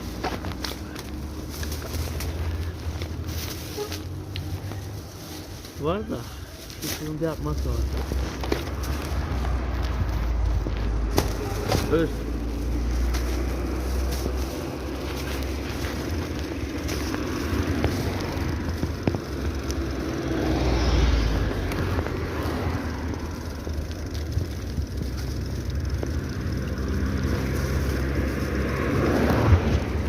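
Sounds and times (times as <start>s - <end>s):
bicycle road noise: 0.0s - 30.0s
wind rumbling on microphone: 12.4s - 30.0s.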